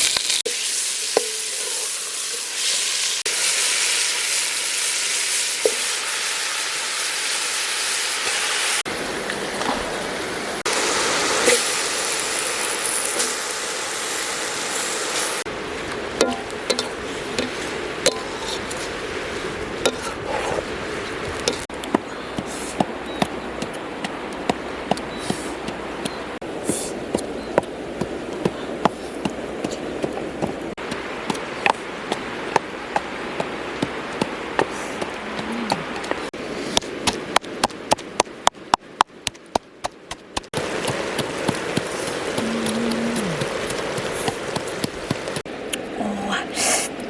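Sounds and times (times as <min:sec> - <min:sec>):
background hiss: 0:00.0 - 0:21.7.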